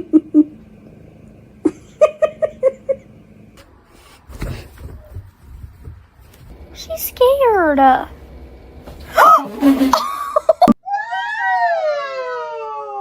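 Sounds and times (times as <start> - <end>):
muffled bump: 3.6 - 6.8.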